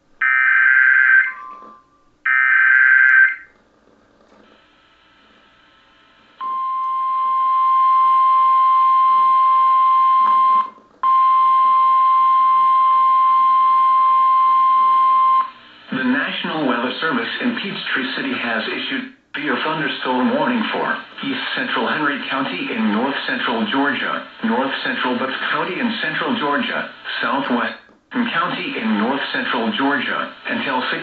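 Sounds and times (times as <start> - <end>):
steady attention tone: 0.2 - 3.6.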